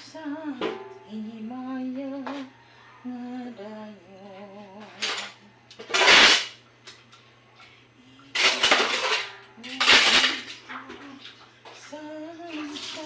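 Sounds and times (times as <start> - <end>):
dishes clattering: 8.4 - 11.0.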